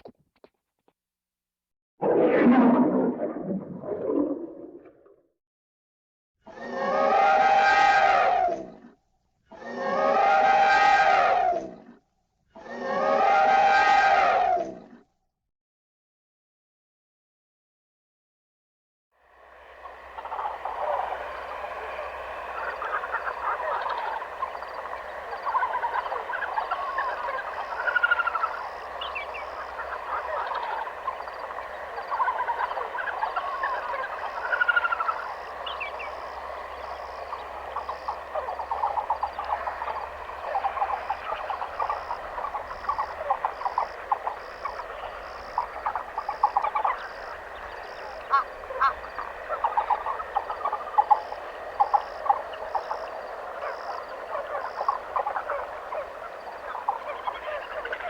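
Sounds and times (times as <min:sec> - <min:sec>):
frog chorus croaking: 0:19.2 - 0:58.0.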